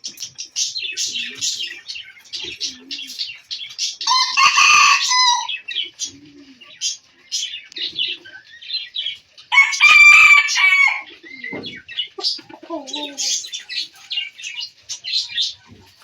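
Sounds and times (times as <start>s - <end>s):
small birds chirping: 0.0s - 16.0s
rooster crowing: 4.0s - 5.6s, 9.5s - 11.1s.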